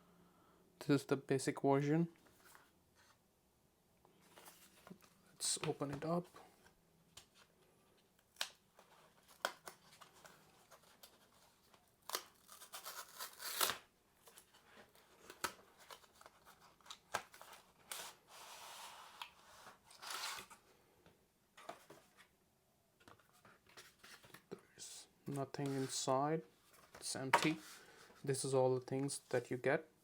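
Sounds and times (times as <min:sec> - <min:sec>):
cardboard packaging tearing: 0:12.0 - 0:13.9.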